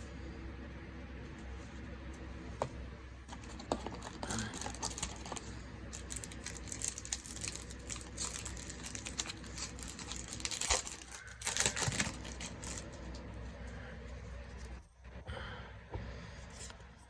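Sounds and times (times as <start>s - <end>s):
cards being shuffled: 2.6s - 13.2s
foil wrapper crinkling and tearing: 3.4s - 13.2s.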